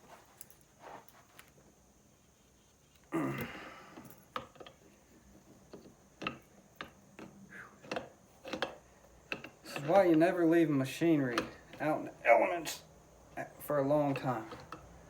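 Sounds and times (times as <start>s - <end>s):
hand tools clicking and tapping: 3.4s - 10.4s, 11.3s - 11.9s, 13.3s - 15.0s.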